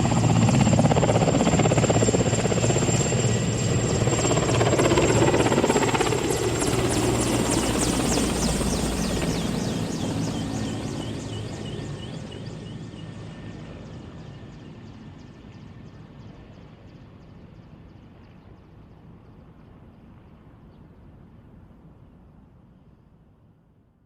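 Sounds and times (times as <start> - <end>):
helicopter rotor beating: 0.0 - 16.8.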